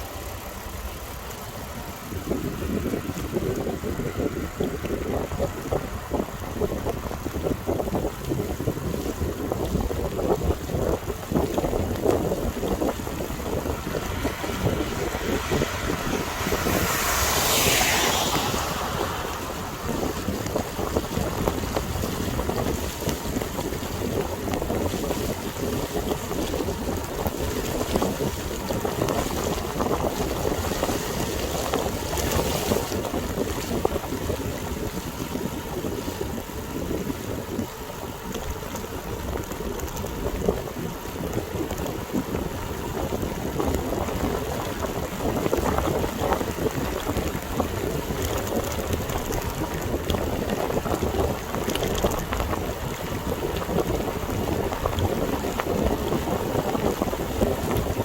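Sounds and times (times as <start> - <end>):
wind buffeting microphone: 0.0 - 58.0
heavy rain hiss: 13.5 - 24.4.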